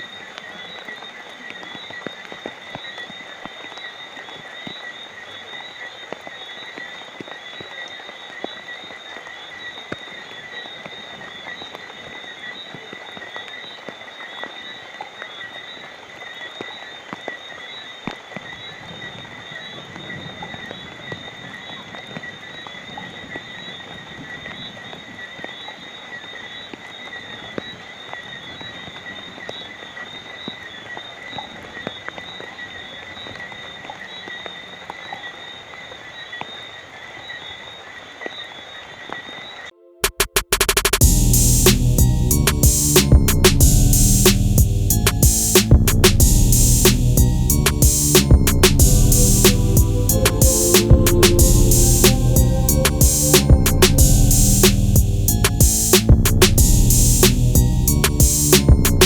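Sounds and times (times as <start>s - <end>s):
rain drops ticking: 0.0s - 18.6s, 41.0s - 59.0s
high-pitched night creatures chorus: 48.8s - 55.4s.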